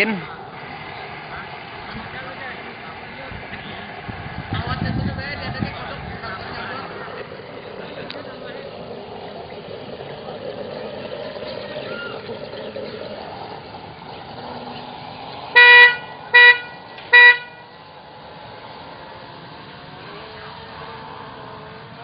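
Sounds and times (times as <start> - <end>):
horn tooting: 15.5 - 18.0.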